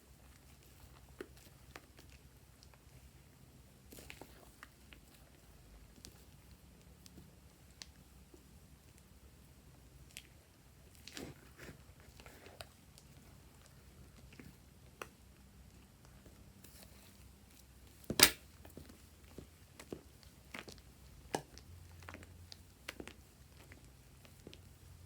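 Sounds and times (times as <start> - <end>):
sticky slime crackles: 0.2 - 25.0
loud sharp snap: 18.2 - 18.4.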